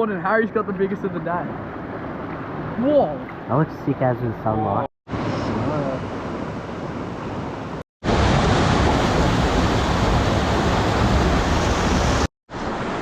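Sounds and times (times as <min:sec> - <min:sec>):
rushing creek water: 0:08.0 - 0:13.0.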